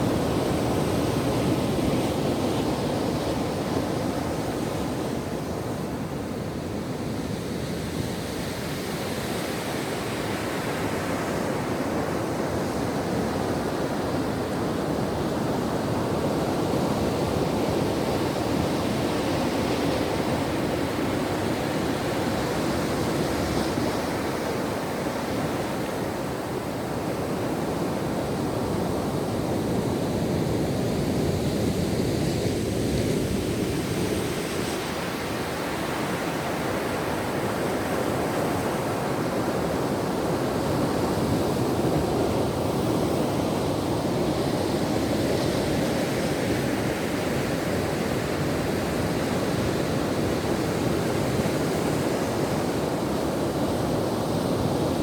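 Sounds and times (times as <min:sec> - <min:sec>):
waves breaking on a beach: 0:00.0 - 0:55.0.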